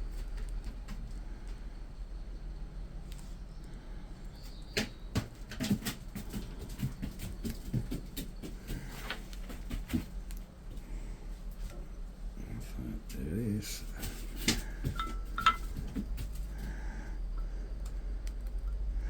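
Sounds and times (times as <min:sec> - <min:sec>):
steady low hum: 0:00.0 - 0:19.0
clicks of tools and metal parts: 0:14.5 - 0:16.0.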